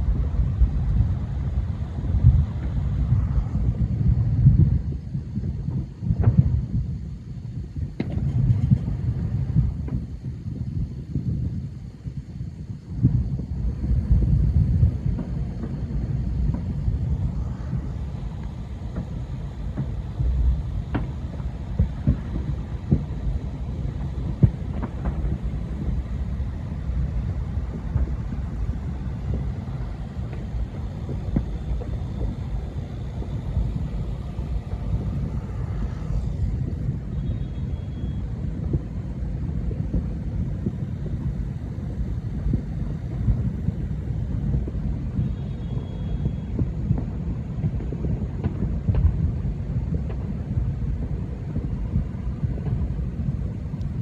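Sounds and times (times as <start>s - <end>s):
distant fireworks rumble: 0.0s - 54.0s
firework pops and bangs: 0.0s - 54.0s.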